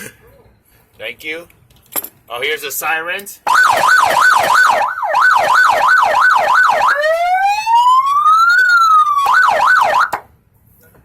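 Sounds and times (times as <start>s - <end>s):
electronic siren yelp and wail: 3.5s - 10.2s.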